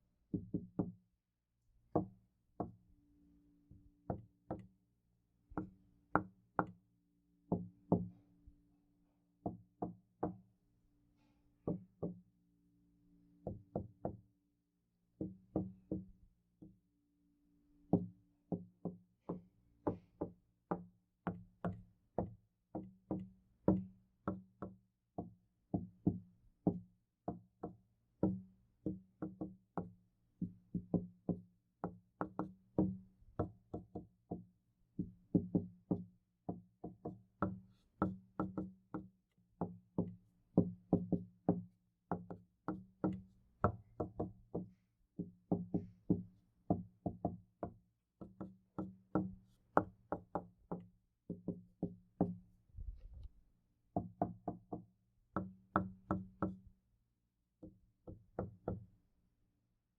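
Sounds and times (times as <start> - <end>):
knocking on a door: 0.3 - 1.0, 35.3 - 53.1, 57.6 - 58.8.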